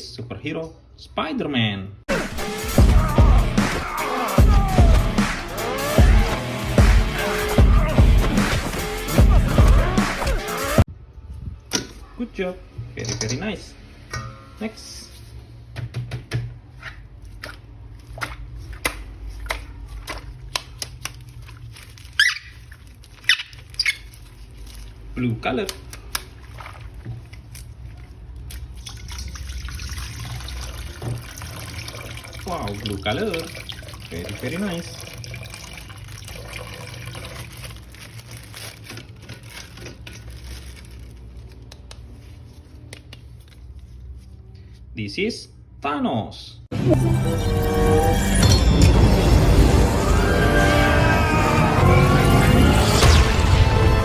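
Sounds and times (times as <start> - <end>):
water running over plastic figure: 18.0 - 38.8
plastic packaging clicks and taps: 18.2 - 21.4
short squeaks: 22.1 - 24.3.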